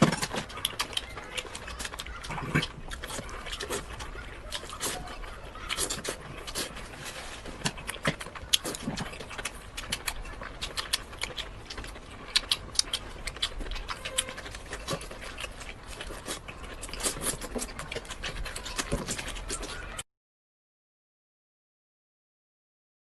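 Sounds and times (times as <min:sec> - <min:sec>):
lip smacks and mouth clicks: 0:00.0 - 0:05.1, 0:07.6 - 0:19.9
wet chewing: 0:00.0 - 0:20.0.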